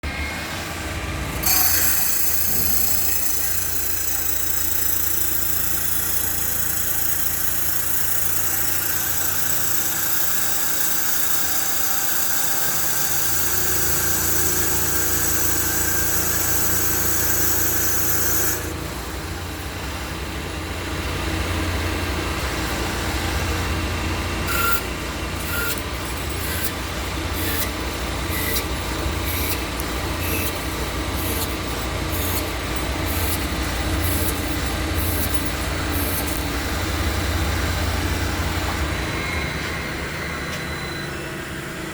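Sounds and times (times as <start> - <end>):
machine motor humming: 0.1 - 41.9
shrill cutting noise: 1.4 - 9.7, 24.4 - 41.8
machine clicks: 25.4 - 36.6.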